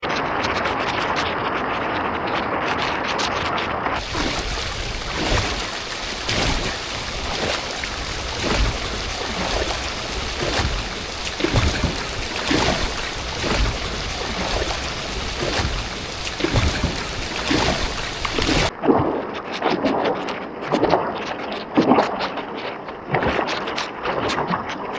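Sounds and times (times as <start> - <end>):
heavy rain: 4.0 - 18.7
sea water slapping against raft: 4.0 - 18.7.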